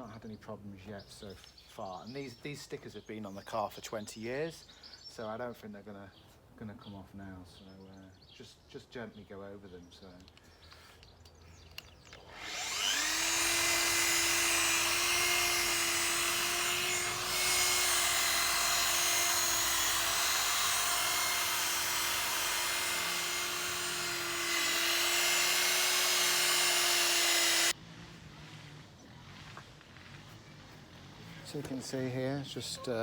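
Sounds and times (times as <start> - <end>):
machine polisher motor whining: 12.2 - 27.8.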